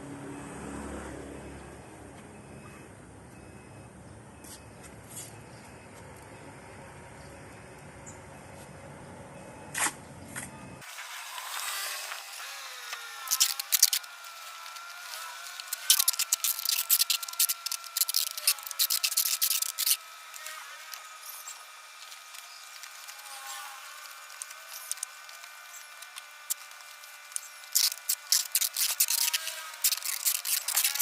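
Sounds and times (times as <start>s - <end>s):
rapid sharp clicks and scraping: 10.8s - 31.0s.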